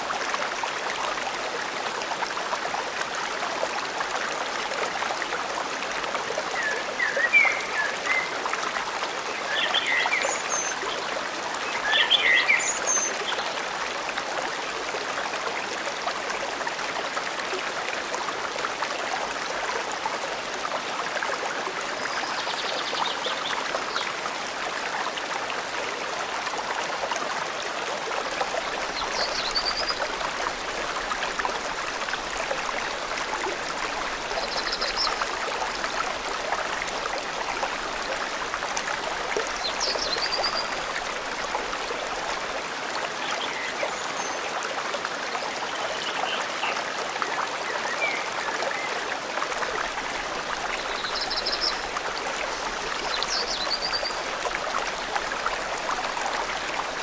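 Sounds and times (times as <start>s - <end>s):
stream flowing: 0.0s - 57.0s.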